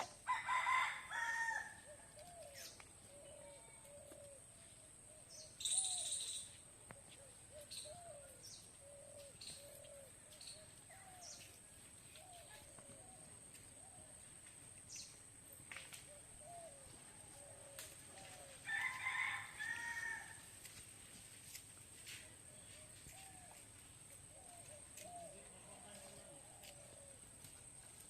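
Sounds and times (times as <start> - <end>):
rooster crowing: 0.2 - 1.9, 18.6 - 20.4
small birds chirping: 5.2 - 15.2.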